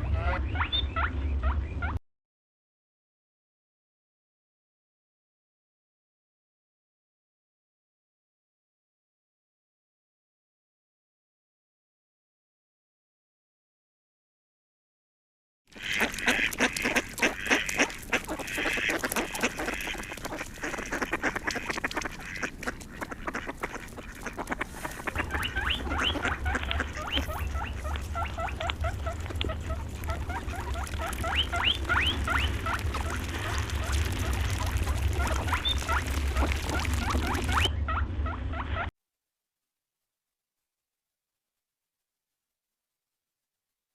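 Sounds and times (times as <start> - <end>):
ducks quacking: 0.0 - 2.0, 15.7 - 38.9
steady low hum: 16.1 - 38.8.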